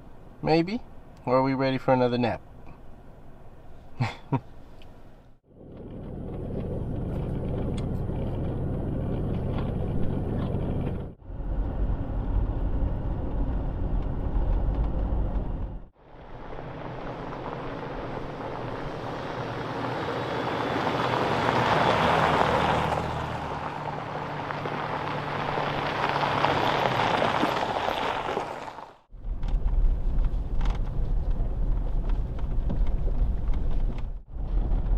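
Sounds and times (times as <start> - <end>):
tyre and road noise: 0.0 - 34.9
truck engine running: 5.5 - 26.9.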